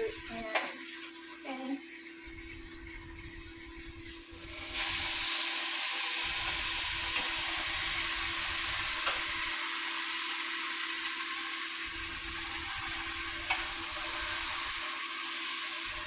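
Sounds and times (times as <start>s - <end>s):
chicken sizzling in hot oil: 0.0s - 16.0s.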